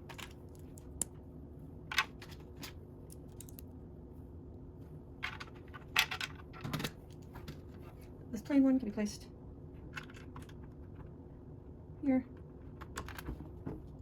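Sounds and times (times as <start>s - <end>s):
faint steady hum: 0.0s - 14.0s
plastic pieces clicking: 2.0s - 3.6s.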